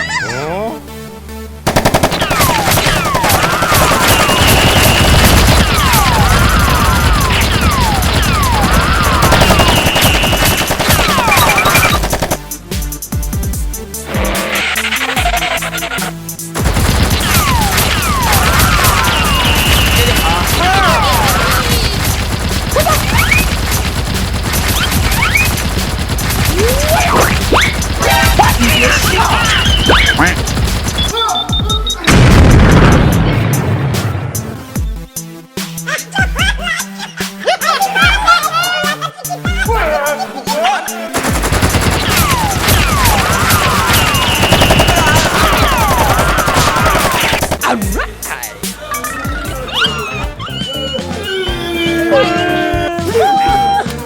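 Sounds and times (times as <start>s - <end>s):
rapid automatic gunfire: 1.6s - 12.6s, 16.6s - 31.4s, 41.2s - 47.8s
falling whistles: 9.1s - 10.6s, 18.3s - 20.4s, 28.6s - 32.1s, 42.9s - 45.7s.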